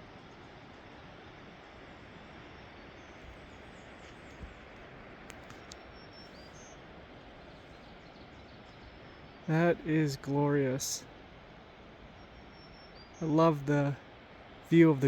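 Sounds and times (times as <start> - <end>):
light clicks: 4.0 - 5.9.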